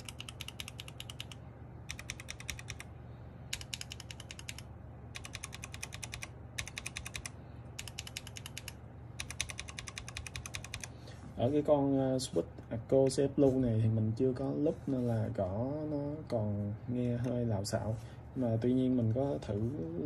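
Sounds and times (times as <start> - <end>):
mechanical keyboard typing: 0.0 - 2.9, 3.5 - 10.9.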